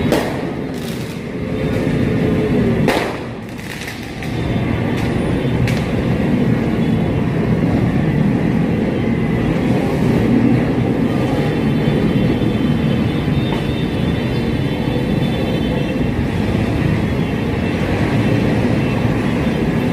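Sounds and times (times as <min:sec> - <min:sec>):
sharp firework cracks: 0:00.0 - 0:01.2, 0:02.8 - 0:04.2
low rumble of street noise: 0:00.0 - 0:19.9.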